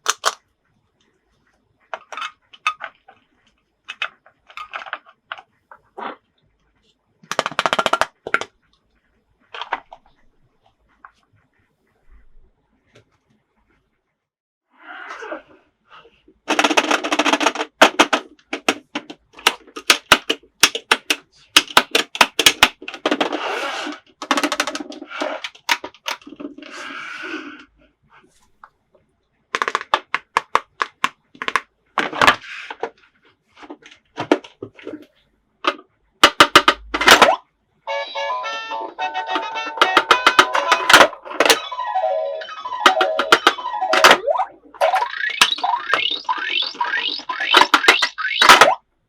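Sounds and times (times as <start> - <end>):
plastic toy pieces clicking: 0.0 - 0.4, 7.3 - 8.5, 16.5 - 26.5, 29.6 - 32.8, 39.3 - 48.8.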